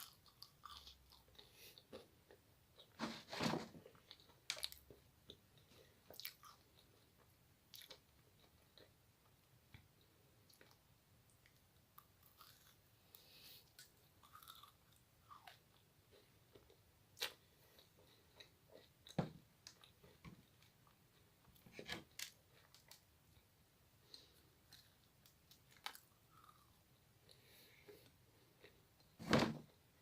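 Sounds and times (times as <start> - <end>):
chewing and crunching: 0.0 - 3.0, 3.8 - 9.0, 11.4 - 21.3, 24.0 - 28.8.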